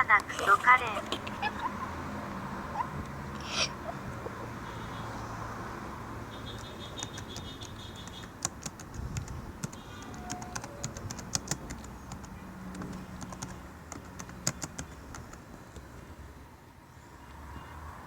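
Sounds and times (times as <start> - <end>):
keyboard typing clicks: 6.5 - 15.9.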